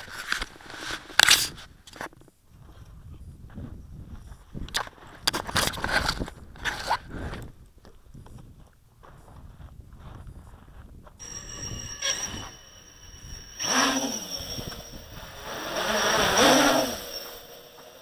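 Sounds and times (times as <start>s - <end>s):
drone motors and propellers whining: 11.2s - 18.0s.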